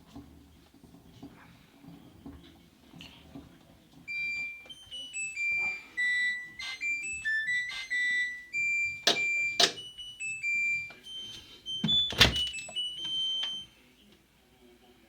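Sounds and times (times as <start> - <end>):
washing machine beeper melody: 4.0 - 13.9.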